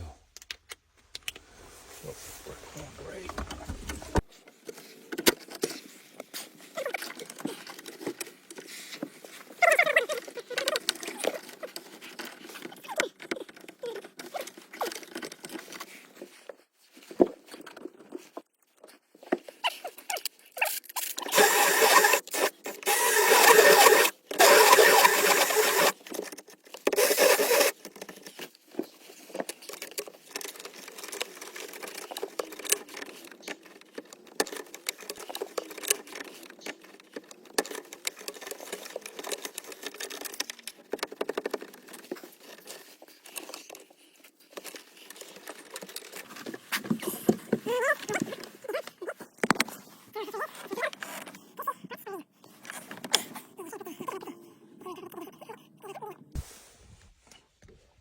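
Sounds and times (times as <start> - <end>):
handling clicks and scrapes: 0.0 - 51.7
power drill cutting: 21.2 - 26.0, 26.9 - 27.7.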